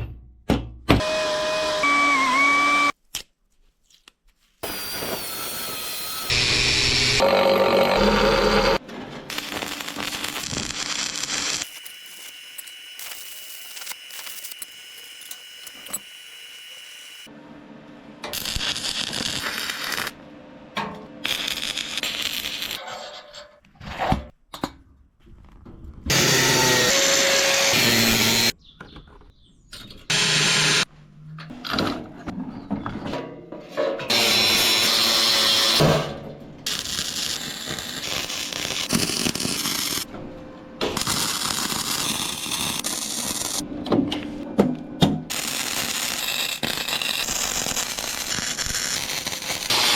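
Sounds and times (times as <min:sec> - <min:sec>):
power tools cutting steel: 0:01.0 - 0:03.0, 0:04.6 - 0:17.3, 0:26.1 - 0:28.5, 0:30.1 - 0:30.9, 0:34.1 - 0:36.1, 0:36.7 - 0:40.1, 0:45.3 - 0:49.9.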